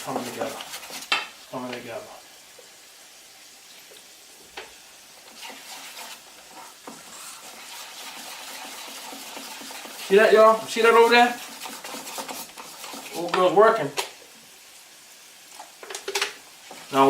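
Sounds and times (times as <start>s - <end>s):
utensil stirring batter in bowl: 0.0s - 1.8s, 5.2s - 14.0s, 16.6s - 17.0s
plantain frying in oil: 0.0s - 17.0s.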